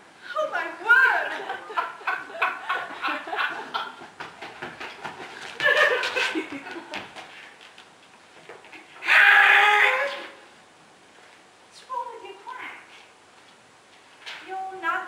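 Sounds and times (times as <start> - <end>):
people laughing: 1.2 - 7.2.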